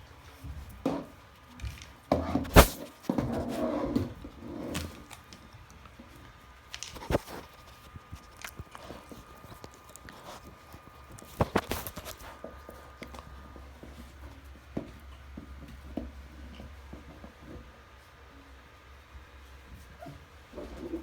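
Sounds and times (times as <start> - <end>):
puppies moving about: 0.3 - 17.6
rough puppy noise: 6.8 - 13.6.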